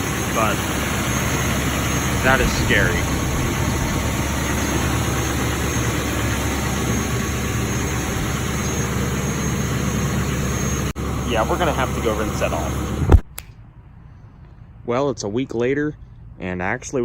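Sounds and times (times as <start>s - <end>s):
diesel engine idling: 0.0s - 13.1s.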